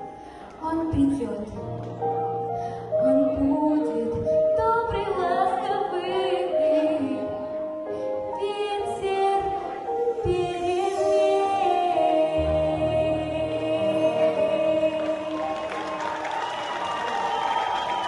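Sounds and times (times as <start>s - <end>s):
woman singing: 0.6s - 1.6s, 3.0s - 7.6s, 8.3s - 16.0s.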